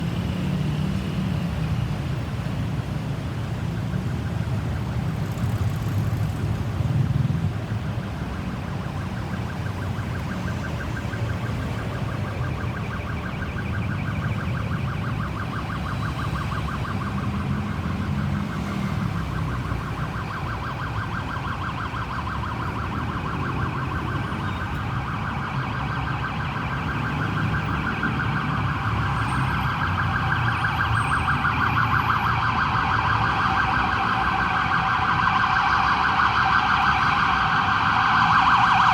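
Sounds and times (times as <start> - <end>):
ambulance siren warbling: 0.0 - 38.9
low rumble of vehicles: 0.0 - 38.9.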